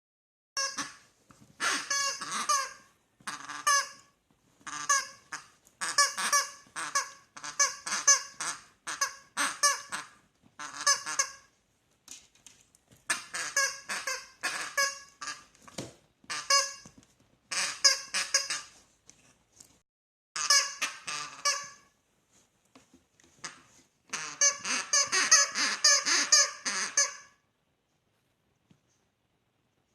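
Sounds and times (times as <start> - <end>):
rubber chicken squeaky toy honking: 0.6 - 11.5, 13.1 - 15.6, 16.3 - 18.8, 20.4 - 21.9, 23.4 - 27.4.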